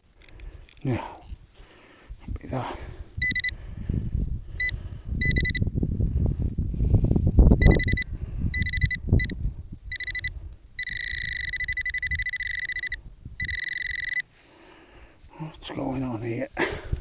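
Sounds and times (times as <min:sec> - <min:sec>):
hand scraping soil: 0:00.0 - 0:03.4
pinpointer buzzing alert tone: 0:03.2 - 0:03.5, 0:05.2 - 0:05.6, 0:07.6 - 0:14.2.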